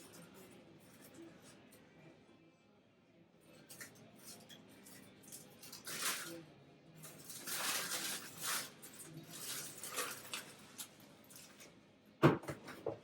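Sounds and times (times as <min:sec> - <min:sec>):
foil wrapping crinkling: 0:05.6 - 0:06.3, 0:07.0 - 0:11.6.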